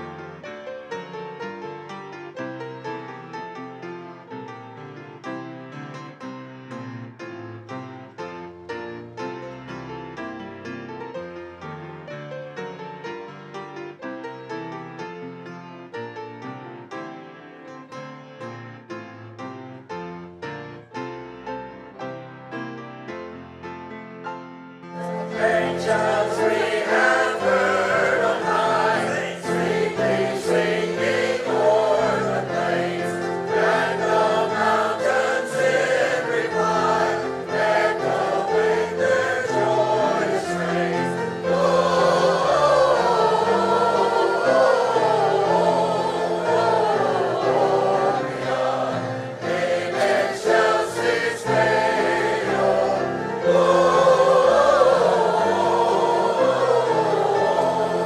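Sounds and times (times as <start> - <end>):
congregation singing a carol: 24.9 - 58.0.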